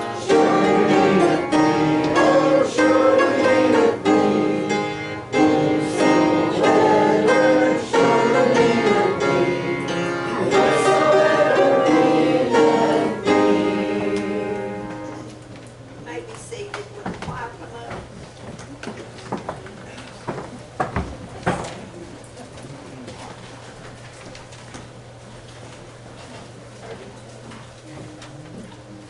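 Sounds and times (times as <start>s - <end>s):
piano playing hymn chords: 0.0s - 15.4s.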